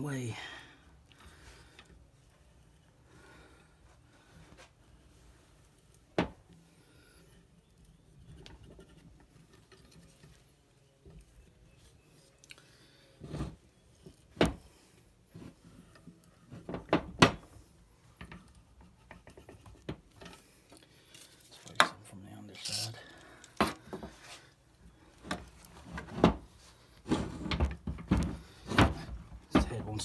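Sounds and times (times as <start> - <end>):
faint metal scraping: 17.9 - 27.5.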